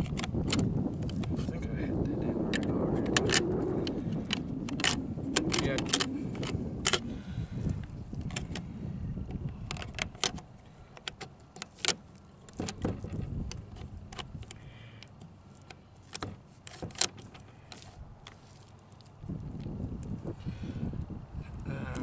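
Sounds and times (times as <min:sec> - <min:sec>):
metal clicks of shotgun parts: 0:02.5 - 0:03.5, 0:04.1 - 0:07.1, 0:09.4 - 0:18.4.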